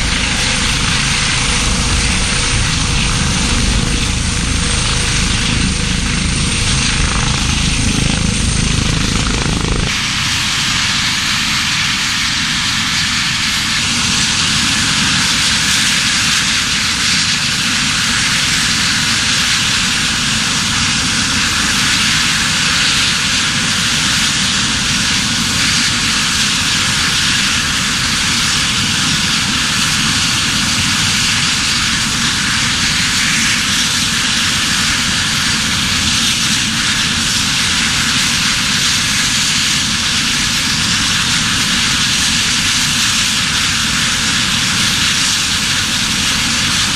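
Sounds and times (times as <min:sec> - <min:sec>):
deep low rumble: 0:00.0 - 0:09.9
steady rushing hiss: 0:00.0 - 0:15.5
helicopter turbine and rotor: 0:00.0 - 0:46.9.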